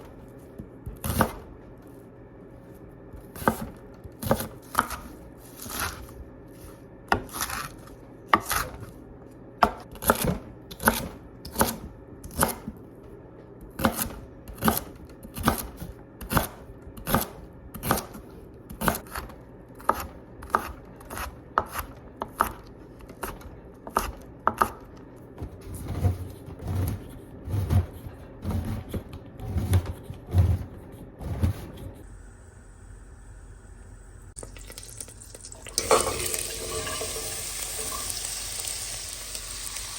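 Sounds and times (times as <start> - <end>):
knife chopping on cutting board: 0.5 - 1.6, 3.2 - 6.1, 8.3 - 8.8, 9.6 - 12.8, 13.7 - 24.8.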